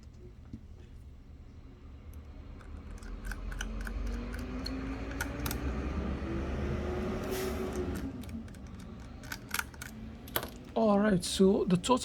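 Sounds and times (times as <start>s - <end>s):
screwdriver clicking on metal frame: 2.6s - 5.8s, 7.7s - 10.6s.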